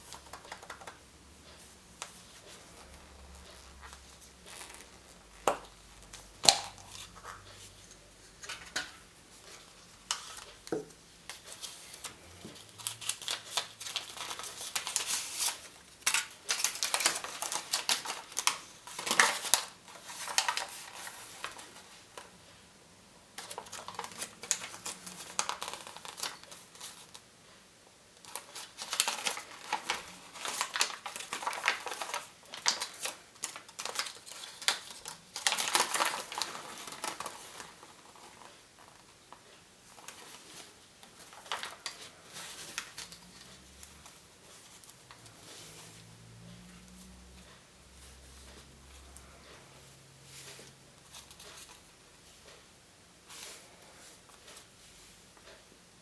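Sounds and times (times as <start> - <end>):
foil and plastic packaging crinkling: 8.4 - 22.3, 23.4 - 27.2, 28.2 - 45.7.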